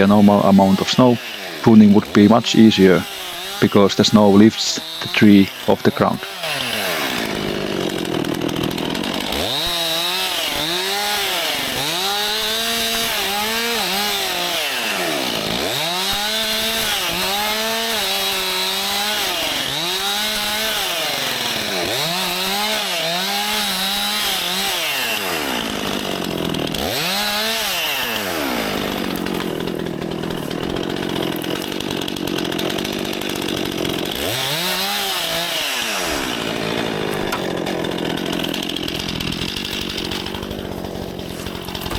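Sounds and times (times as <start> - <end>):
chainsaw cutting branches: 0.0 - 41.9.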